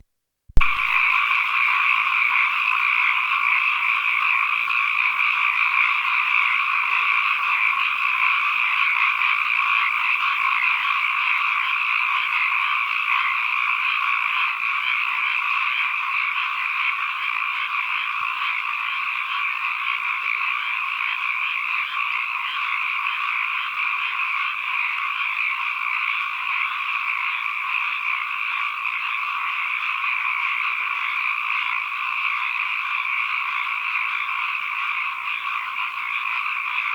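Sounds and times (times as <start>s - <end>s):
chorus of frogs calling: 0.6s - 36.9s.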